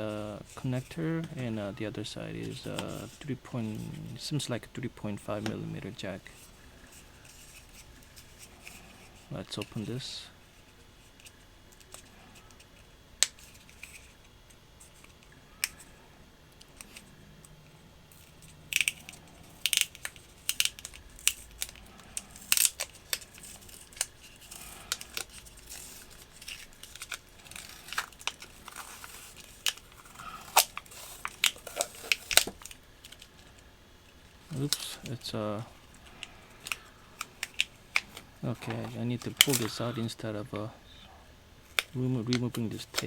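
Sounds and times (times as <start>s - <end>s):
plastic and tape crinkling and tearing: 0.3s - 4.1s, 18.1s - 40.6s, 41.6s - 43.0s.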